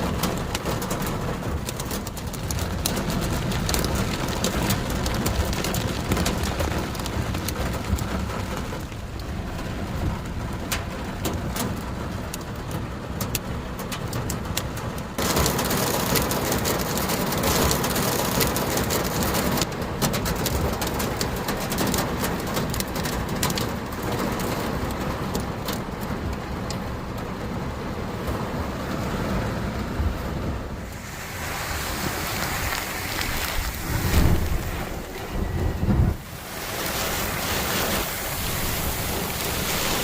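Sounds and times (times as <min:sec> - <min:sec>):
hailstones striking hard surfaces: 0:00.0 - 0:09.0, 0:13.2 - 0:24.5
heavy rain: 0:00.0 - 0:40.0.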